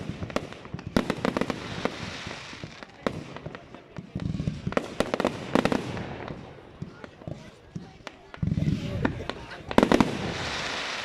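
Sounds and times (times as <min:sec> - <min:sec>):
fireworks bangs and crackling: 0:00.0 - 0:11.0.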